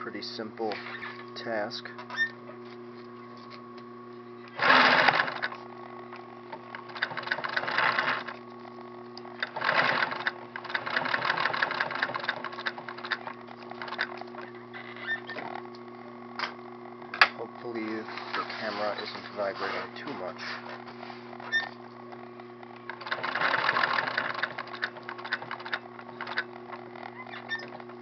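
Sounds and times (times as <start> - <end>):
sewing machine stitching: 4.6 - 5.6, 6.9 - 8.4, 9.4 - 14.2, 22.9 - 26.5.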